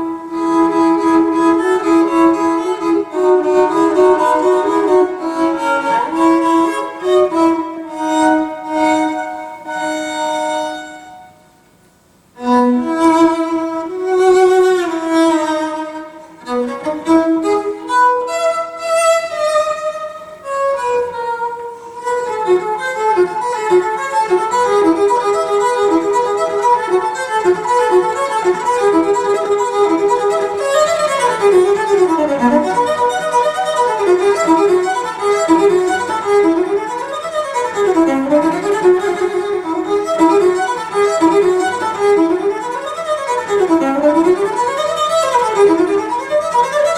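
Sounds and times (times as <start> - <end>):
violin music over loudspeakers: 0.0 - 46.9.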